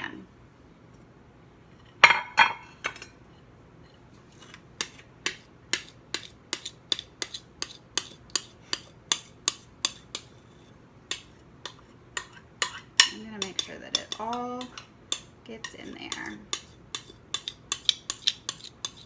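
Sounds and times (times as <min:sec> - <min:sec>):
spoon knocking against mixing bowl: 0:11.1 - 0:19.0.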